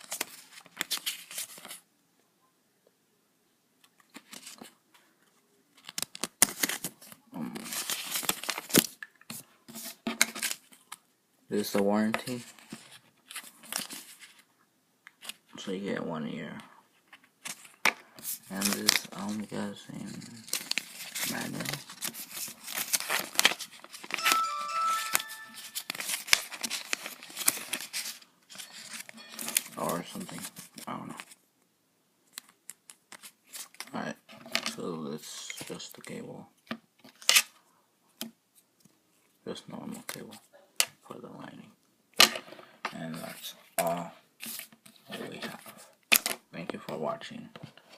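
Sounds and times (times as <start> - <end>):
paper rustling: 0.0 - 1.8, 4.0 - 4.8, 5.8 - 10.9, 12.2 - 14.5, 17.0 - 24.6, 25.6 - 31.4
short chime of steady tones: 24.2 - 26.2, 29.2 - 29.7.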